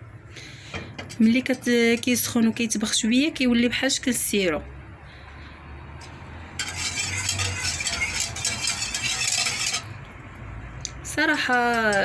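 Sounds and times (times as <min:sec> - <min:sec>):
spoon scraping a pot: 0:06.0 - 0:10.2, 0:11.4 - 0:12.0.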